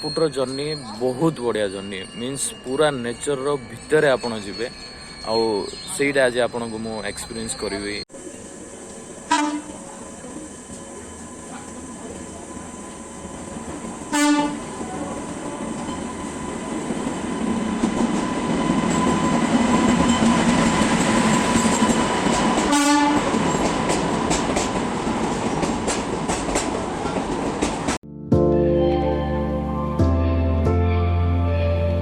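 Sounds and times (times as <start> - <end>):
train wheels rumbling on track: 0.0 - 28.0
locomotive horn blasts: 9.3 - 9.8, 14.1 - 14.7, 22.7 - 23.3.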